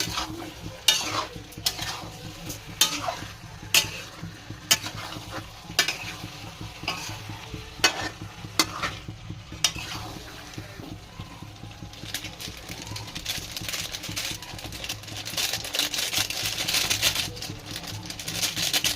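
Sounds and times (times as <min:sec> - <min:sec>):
spatula scraping a pan: 0:00.0 - 0:11.4
food sizzling in a pan: 0:00.0 - 0:18.9.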